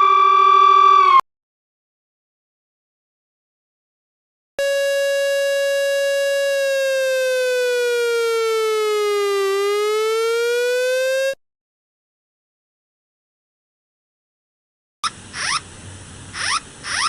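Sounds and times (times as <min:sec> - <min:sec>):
buzzy emergency siren: 0:00.0 - 0:01.2, 0:04.6 - 0:11.4.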